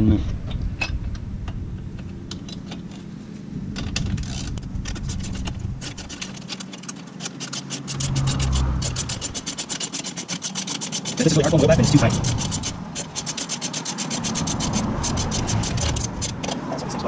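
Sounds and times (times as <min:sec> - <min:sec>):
low hum: 0:00.0 - 0:06.4, 0:07.8 - 0:09.7, 0:11.6 - 0:13.2
drive chain ticking over sprocket: 0:04.2 - 0:16.6.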